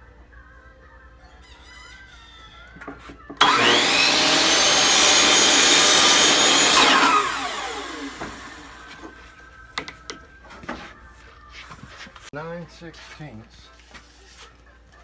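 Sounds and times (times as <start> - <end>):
power tool motor whining: 3.4 - 9.3.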